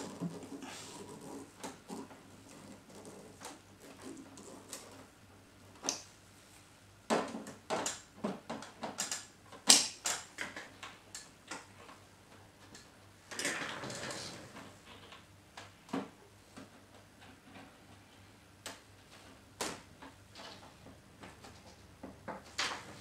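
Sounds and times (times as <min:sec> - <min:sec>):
plastic parts clicking and knocking: 0:07.1 - 0:11.7.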